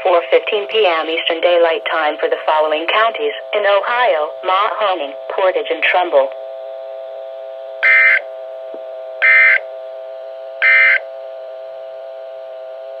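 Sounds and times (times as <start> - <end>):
steady electronic hum: 0.0 - 13.0
screeching digital data bursts: 7.8 - 8.2, 9.2 - 9.6, 10.6 - 11.0.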